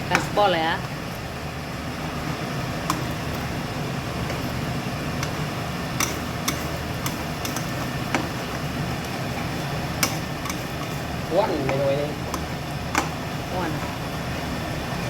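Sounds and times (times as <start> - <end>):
gas burner rushing: 0.0 - 15.0
spatula knocking against pan: 6.0 - 8.5.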